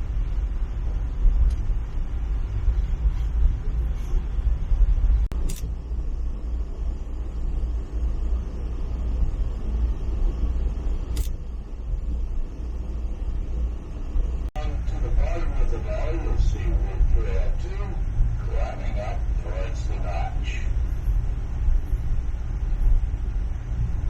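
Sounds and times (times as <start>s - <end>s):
train rumbling: 0.0s - 24.0s.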